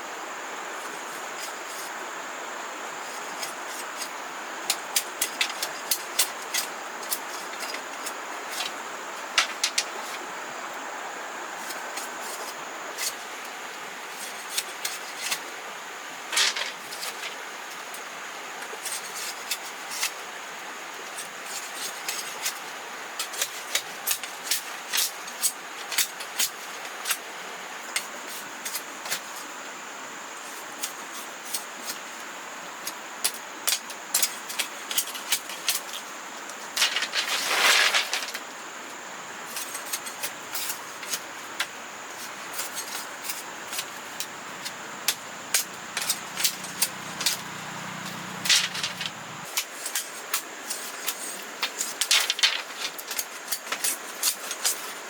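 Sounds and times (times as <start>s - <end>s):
steady hiss: 0.0s - 55.0s
scraping rustle: 3.0s - 10.4s, 16.2s - 20.4s, 33.6s - 38.6s, 39.4s - 55.0s.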